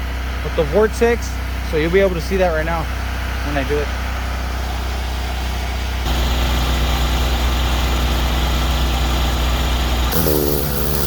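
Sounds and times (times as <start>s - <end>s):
air compressor humming: 6.1s - 11.0s
compressed air hissing: 10.1s - 11.0s.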